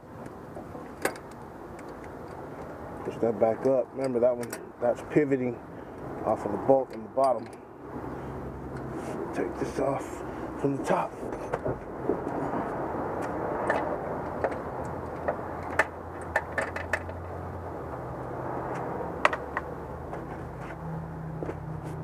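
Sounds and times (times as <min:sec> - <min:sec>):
metallic clicks and taps of tools: 0:01.0 - 0:02.8, 0:04.0 - 0:04.7, 0:06.8 - 0:07.6.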